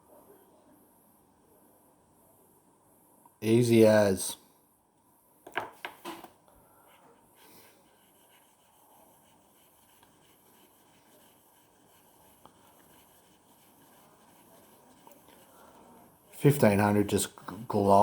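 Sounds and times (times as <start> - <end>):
blade rubbing on sandpaper: 7.9 - 15.2.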